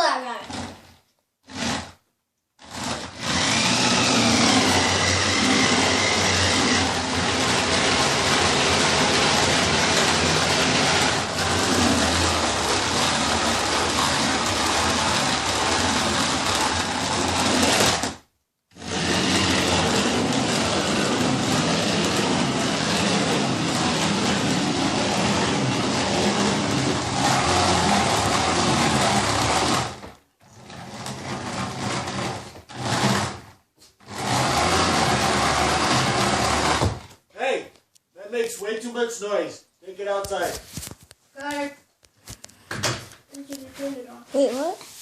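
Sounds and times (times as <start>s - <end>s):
small electric motor whirring: 2.6s - 18.1s, 18.8s - 30.0s.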